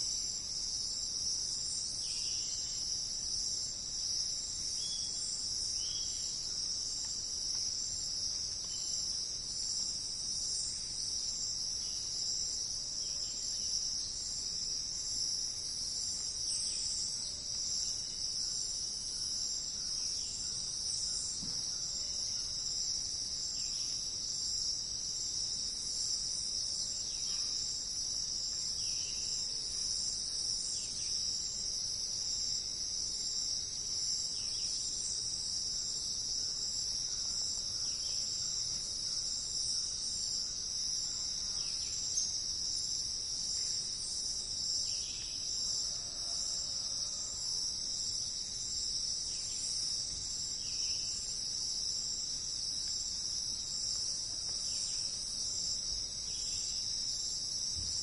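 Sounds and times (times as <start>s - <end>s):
insects chorus: 0.0s - 58.0s.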